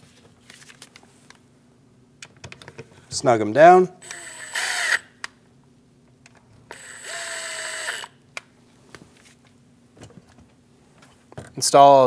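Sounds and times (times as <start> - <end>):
power driver running: 4.0 - 5.1, 6.7 - 8.1.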